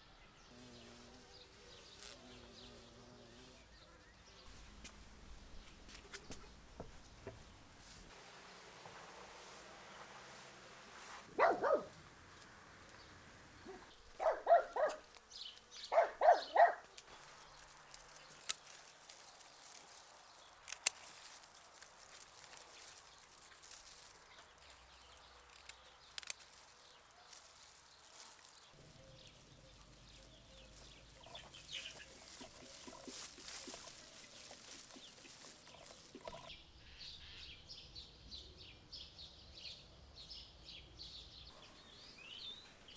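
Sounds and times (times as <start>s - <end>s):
dog barking: 11.3s - 12.0s, 13.6s - 15.0s, 15.9s - 16.9s
sharp clicks: 20.6s - 21.3s, 25.4s - 26.5s.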